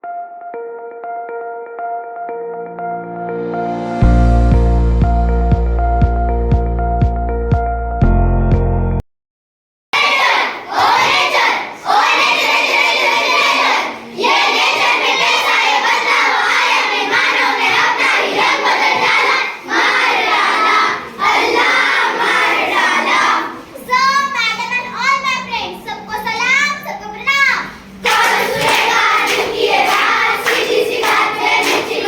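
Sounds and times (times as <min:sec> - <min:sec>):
children chanting in unison: 0:10.0 - 0:24.3, 0:27.8 - 0:32.0.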